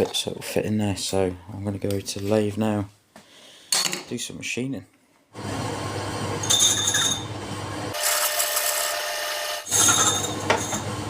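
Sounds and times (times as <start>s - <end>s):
metal lathe running: 6.3s - 11.0s
tool scraping metal: 6.4s - 7.3s, 7.9s - 11.0s.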